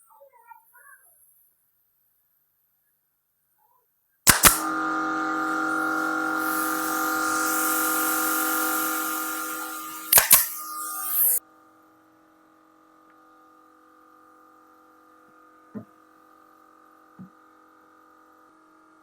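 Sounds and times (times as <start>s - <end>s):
sharp switch clicks: 4.3s - 4.7s, 10.1s - 10.6s
power tool motor running: 4.3s - 11.4s.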